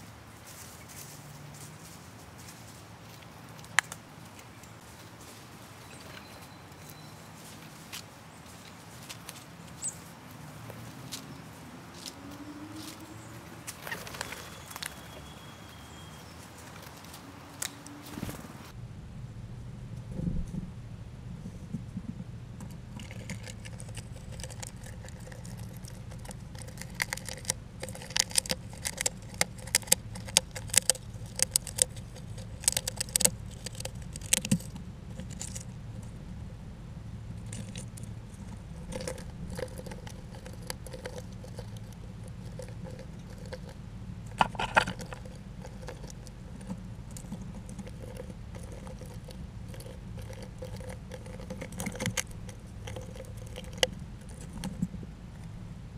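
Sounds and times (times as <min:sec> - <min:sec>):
steady low hum: 0:06.6 - 0:55.9
rodent clicking and tapping: 0:22.6 - 0:36.1, 0:37.4 - 0:55.5.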